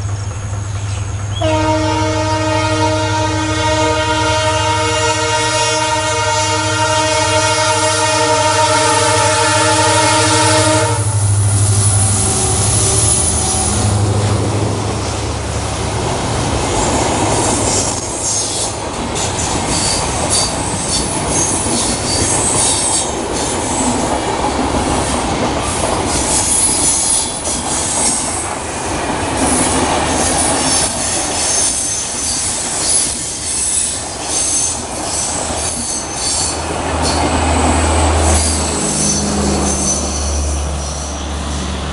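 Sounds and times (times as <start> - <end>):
train wheels rumbling on rails: 0.0 - 41.9
metallic wheel squeals: 11.5 - 14.0, 30.6 - 37.4, 38.2 - 41.8.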